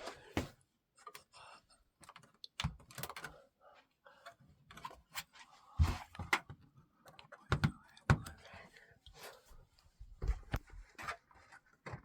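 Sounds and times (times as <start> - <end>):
light clicks and knocks of handling: 2.0 - 3.4.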